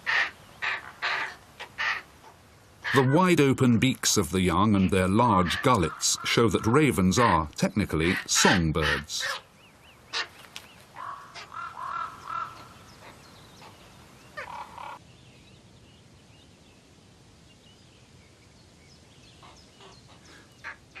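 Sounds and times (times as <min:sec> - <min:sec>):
raven nestlings begging calls: 0:00.0 - 0:03.5, 0:04.4 - 0:15.0, 0:19.4 - 0:21.0.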